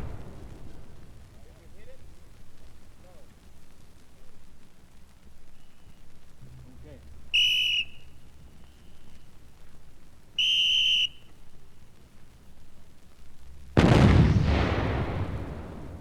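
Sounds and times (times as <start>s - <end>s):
artillery gun boom: 0.0s - 2.3s, 13.8s - 16.0s
signal whistle blasts: 7.3s - 9.2s, 10.4s - 11.4s.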